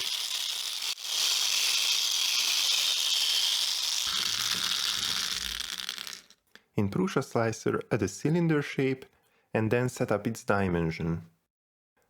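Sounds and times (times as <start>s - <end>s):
rainstick rushing hiss: 0.0s - 6.4s.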